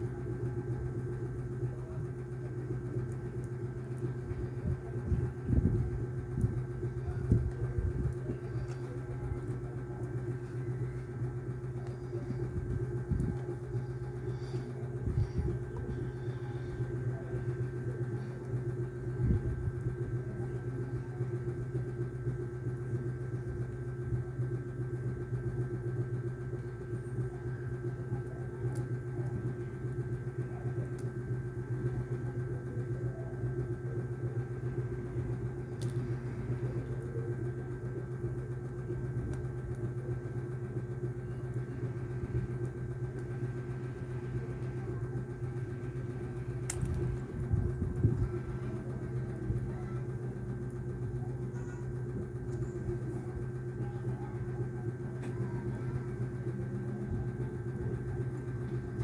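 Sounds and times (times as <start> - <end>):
low machine hum: 0.0 - 59.0.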